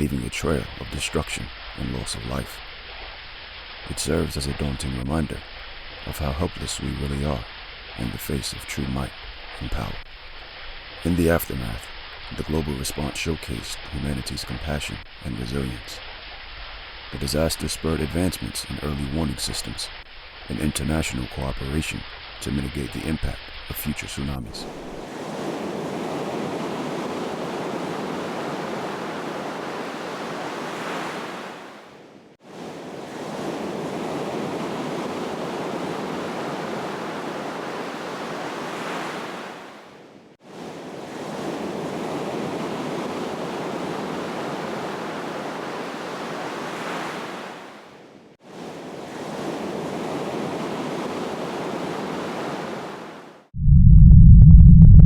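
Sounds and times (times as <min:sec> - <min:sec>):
ocean surf washing: 0:00.0 - 0:53.5
loud low rumble: 0:53.6 - 0:55.0.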